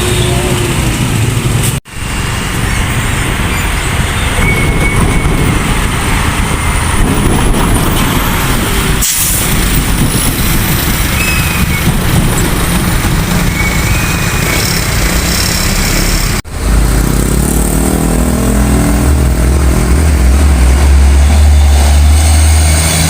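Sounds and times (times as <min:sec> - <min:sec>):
heavy trucks passing: 0:00.0 - 0:23.0
air brakes hissing: 0:08.9 - 0:09.8.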